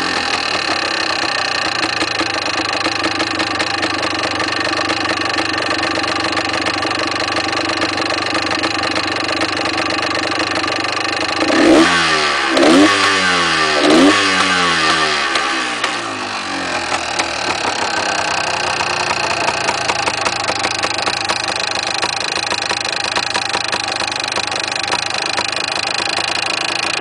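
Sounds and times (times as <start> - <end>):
engine revving: 0.0 - 3.8, 11.1 - 27.0
motorcycle engine idling with rattle: 0.0 - 27.0.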